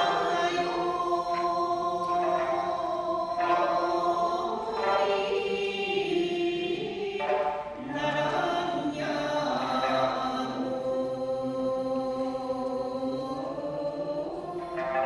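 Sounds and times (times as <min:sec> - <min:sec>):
plucked lute accompaniment: 0:00.0 - 0:10.7, 0:14.3 - 0:15.0
group singing in unison: 0:00.0 - 0:15.0.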